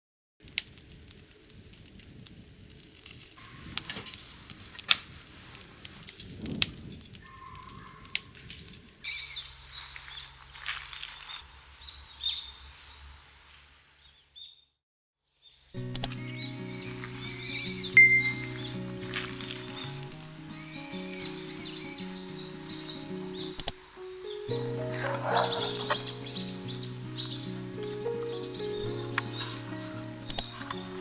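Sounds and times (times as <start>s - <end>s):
campfire crackling and popping: 0.4s - 13.9s, 15.8s - 31.0s
birds chirping: 7.2s - 14.6s, 15.5s - 31.0s.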